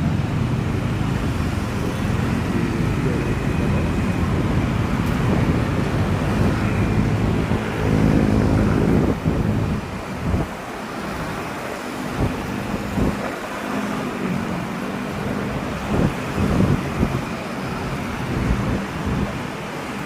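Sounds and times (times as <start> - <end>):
traffic hum: 0.0 - 20.0.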